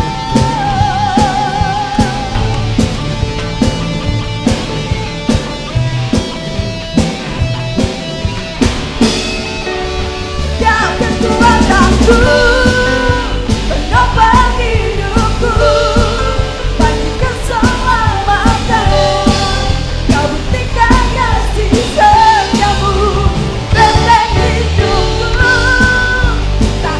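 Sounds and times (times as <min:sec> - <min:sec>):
lead vocal singing: 0:00.0 - 0:03.4, 0:10.3 - 0:26.9
rock band playing: 0:00.0 - 0:26.9.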